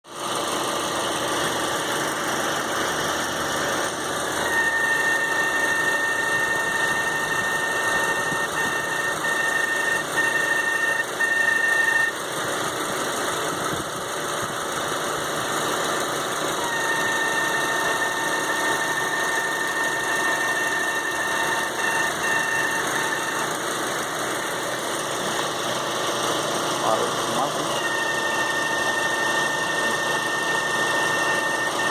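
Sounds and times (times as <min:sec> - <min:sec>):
car engine idling: 0:00.1 - 0:31.9
high-pitched whine: 0:02.6 - 0:12.2, 0:16.5 - 0:31.9.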